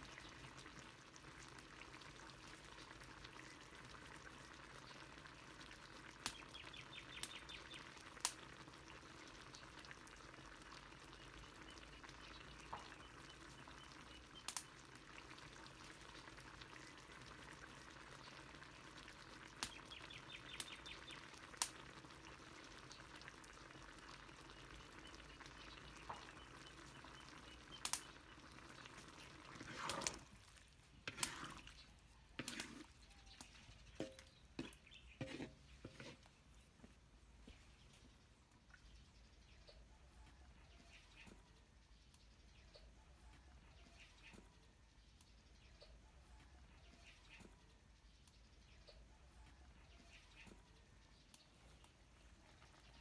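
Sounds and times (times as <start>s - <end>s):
pot simmering and sizzling: 0.0s - 53.0s
sharp pops: 27.8s - 28.2s.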